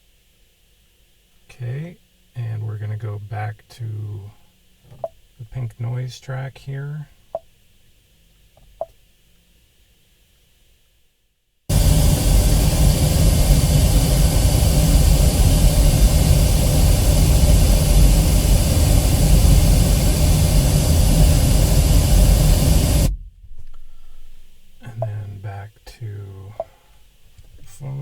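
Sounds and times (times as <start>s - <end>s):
pink noise through car stereo: 0.0s - 7.4s, 11.7s - 23.1s, 24.7s - 26.8s, 27.4s - 28.0s.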